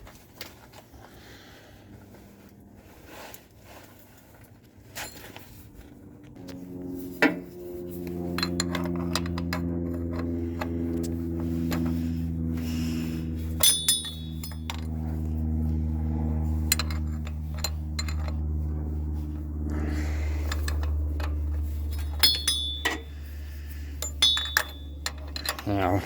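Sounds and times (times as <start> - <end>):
low hum: 0.0 - 26.0
wrench clinking on metal: 13.6 - 14.9, 21.9 - 23.1, 24.0 - 25.9.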